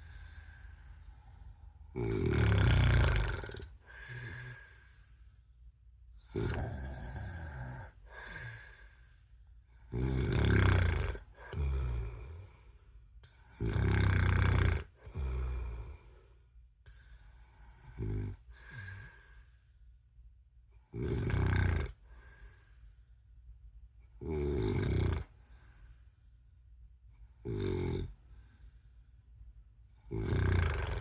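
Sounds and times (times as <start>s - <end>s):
man snoring heavily: 1.9s - 4.9s, 6.2s - 8.9s, 9.8s - 12.6s, 13.4s - 16.1s, 17.6s - 19.3s, 20.9s - 22.1s, 24.2s - 25.3s, 27.4s - 28.1s, 30.0s - 31.0s.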